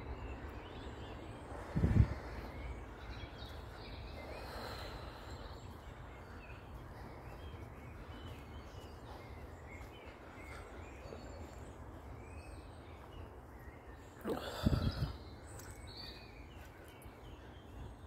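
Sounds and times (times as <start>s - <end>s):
birds chirping and singing: 0.0s - 18.0s.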